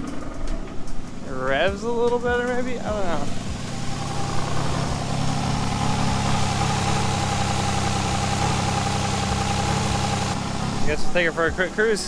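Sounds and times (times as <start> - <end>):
car engine idling rough: 0.0 - 12.0.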